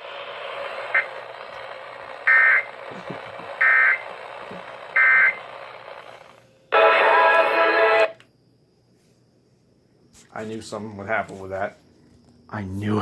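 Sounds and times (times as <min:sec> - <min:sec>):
radio static hiss: 0:00.0 - 0:08.2
harsh buzzing data tones: 0:00.0 - 0:08.4.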